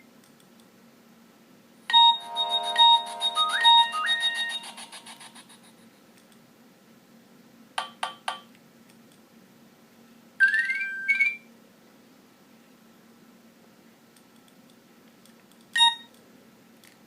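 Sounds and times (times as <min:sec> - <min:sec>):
melodic ringtone: 0:01.9 - 0:05.4
short alert tone: 0:02.0 - 0:05.4
rising sweep alert tone: 0:02.0 - 0:05.5.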